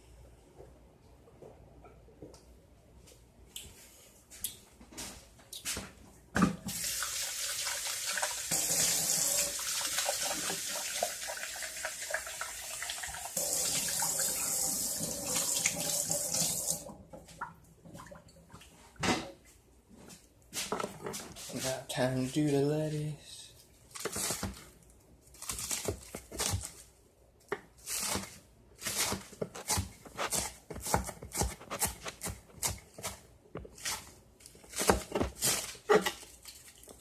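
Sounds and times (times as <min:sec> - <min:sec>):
kitchen tap running into sink: 0:06.7 - 0:16.9.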